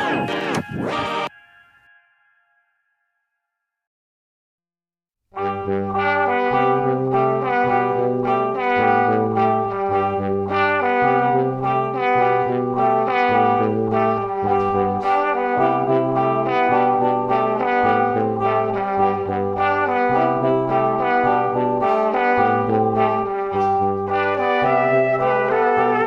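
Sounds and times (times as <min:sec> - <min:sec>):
melody over repeating bass line: 0:05.5 - 0:26.0.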